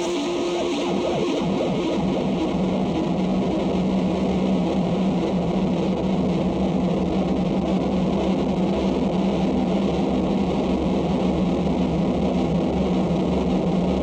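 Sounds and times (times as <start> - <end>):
steady low drone: 0.0 - 6.9
distorted harsh noise music: 0.0 - 7.0.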